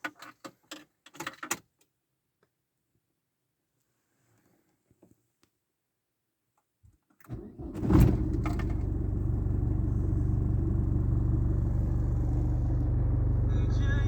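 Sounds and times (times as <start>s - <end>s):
car engine idling: 7.3s - 14.0s
car engine starting: 7.3s - 14.0s.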